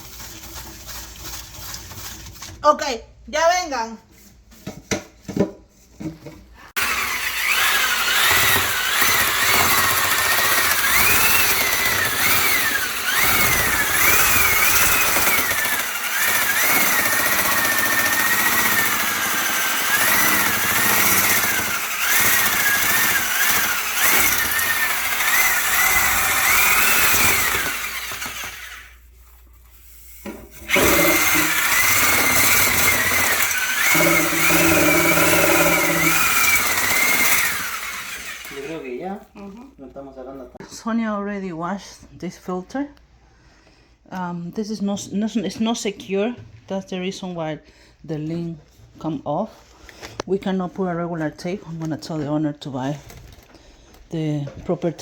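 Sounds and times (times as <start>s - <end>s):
power drill motor whine: 6.8s - 28.9s, 30.7s - 38.7s.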